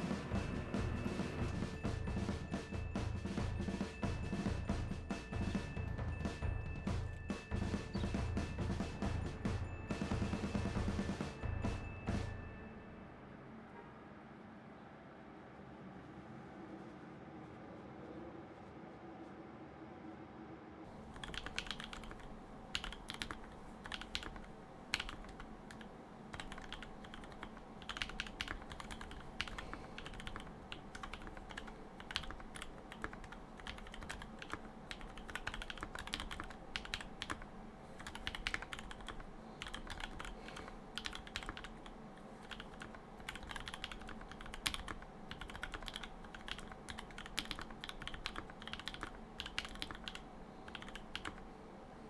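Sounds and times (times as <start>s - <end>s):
mechanical keyboard typing: 20.9s - 51.7s.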